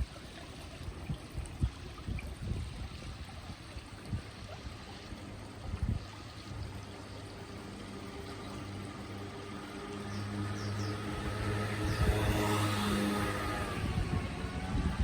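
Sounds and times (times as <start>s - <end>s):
river water running: 0.0s - 15.0s
vehicle engine hum: 6.3s - 15.0s.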